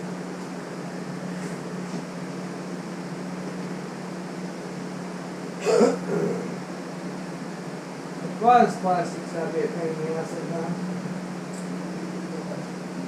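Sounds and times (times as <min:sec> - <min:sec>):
steady mechanical hum: 0:00.0 - 0:13.0
short vocal grunt: 0:05.6 - 0:06.5.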